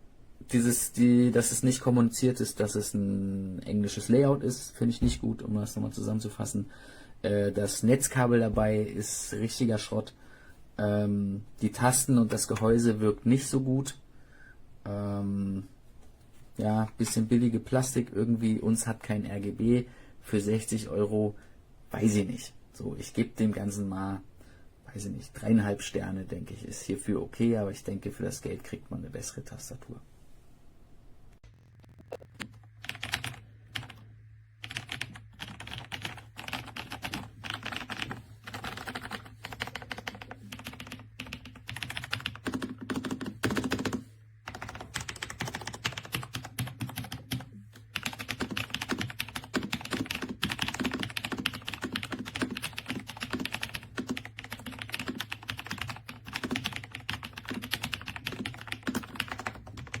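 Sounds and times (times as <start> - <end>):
mechanical keyboard typing: 32.2 - 34.0, 34.6 - 60.0.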